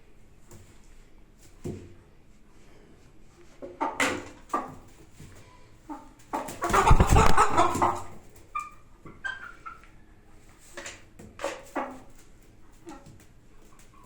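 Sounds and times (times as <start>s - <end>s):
noisy animal flurry: 6.2s - 9.8s.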